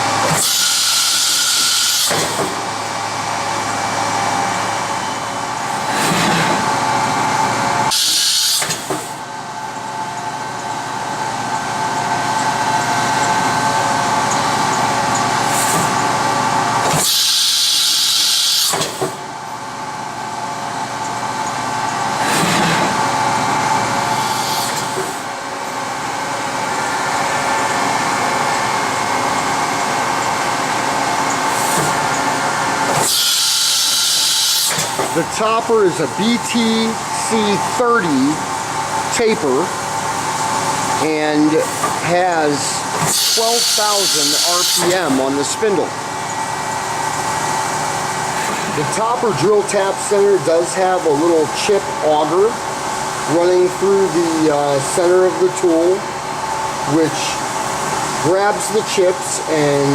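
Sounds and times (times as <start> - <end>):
machine whine: 0.0 - 9.1, 19.9 - 52.5
air hiss bursts: 0.3 - 2.6, 7.9 - 9.2, 17.0 - 19.1, 24.1 - 25.2, 32.9 - 35.2, 43.0 - 45.2.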